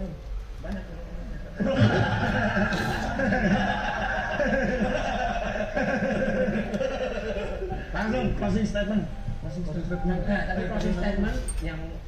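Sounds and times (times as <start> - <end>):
people laughing loudly: 1.5 - 8.2.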